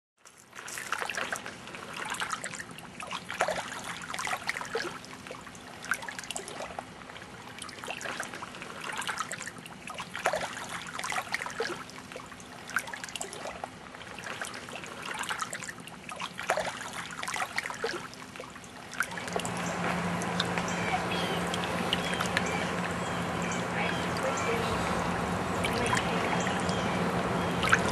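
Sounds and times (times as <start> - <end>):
waves lapping at shore: 0.2 - 27.9
steady low hum: 18.9 - 27.9.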